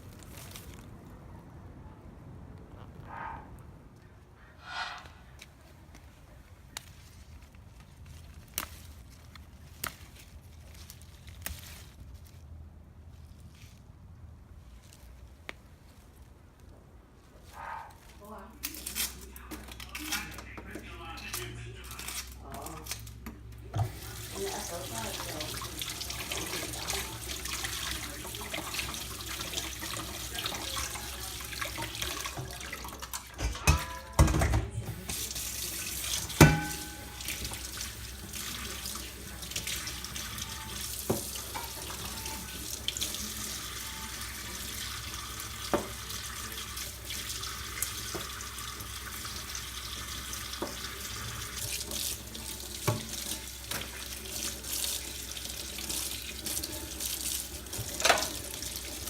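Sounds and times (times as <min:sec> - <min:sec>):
water running from a tap: 0:23.8 - 0:59.0.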